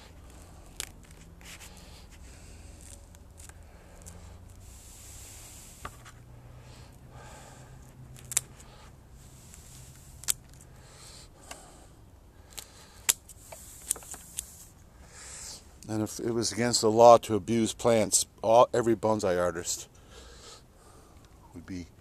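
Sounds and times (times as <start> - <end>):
rustling of roots and soil: 0.0 - 11.6, 12.3 - 17.2
shears snipping roots: 8.1 - 8.8.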